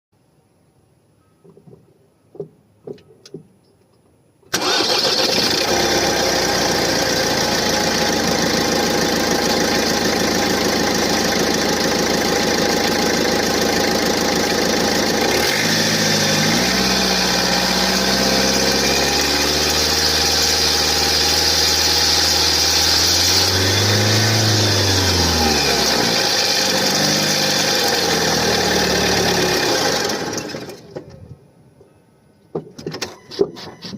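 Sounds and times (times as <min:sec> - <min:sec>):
diesel engine starting and running: 0:04.5 - 0:31.2.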